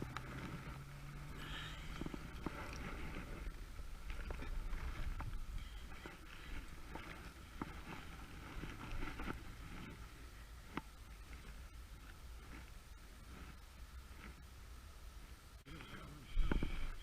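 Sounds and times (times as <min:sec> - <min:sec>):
wind buffeting microphone: 0:00.0 - 0:13.5.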